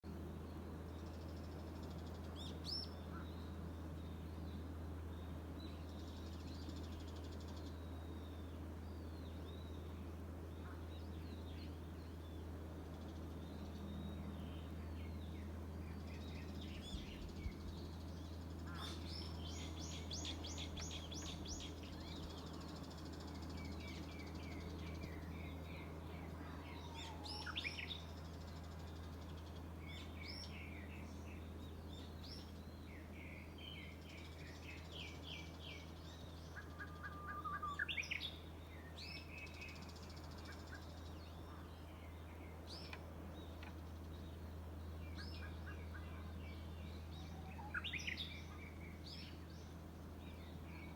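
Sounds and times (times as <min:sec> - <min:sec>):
steady low hum: 0:00.1 - 0:50.9
birds singing and chirping: 0:13.1 - 0:50.9.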